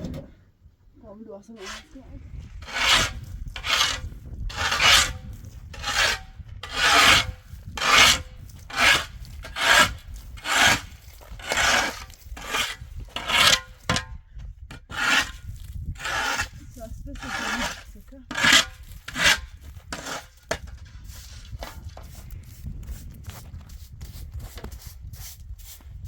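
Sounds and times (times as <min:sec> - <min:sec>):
rhythmic scraping by hand: 0:02.6 - 0:14.0, 0:14.8 - 0:15.4, 0:16.0 - 0:22.2.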